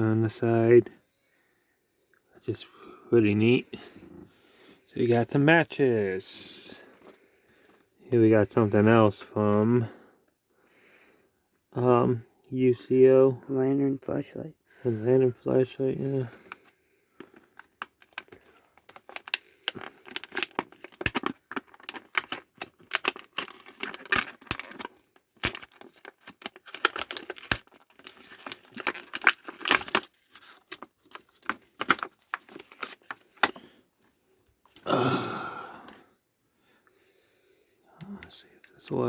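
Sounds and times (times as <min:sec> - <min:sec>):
packaging clicks and crinkles: 0:16.3 - 0:34.9
packaging tearing: 0:17.5 - 0:33.6.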